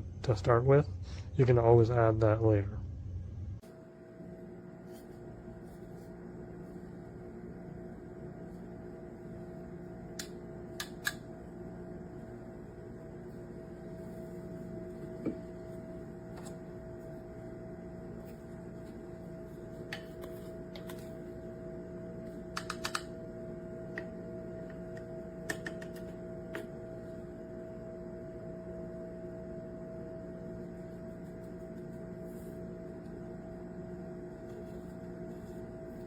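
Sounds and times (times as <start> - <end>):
steady low hum: 0.0 - 36.0.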